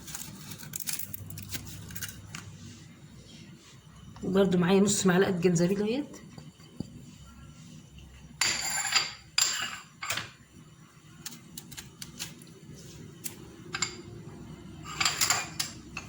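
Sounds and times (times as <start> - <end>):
spoon scraping a container: 8.4 - 10.0, 14.8 - 15.8.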